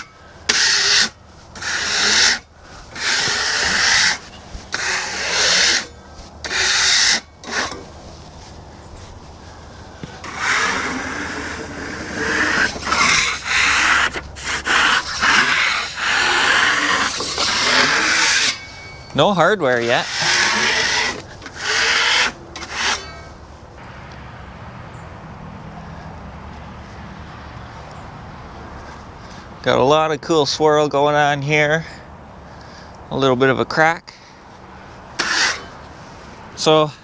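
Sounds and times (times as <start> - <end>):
brush scraping wood slab: 0.0 - 23.9, 34.9 - 36.7.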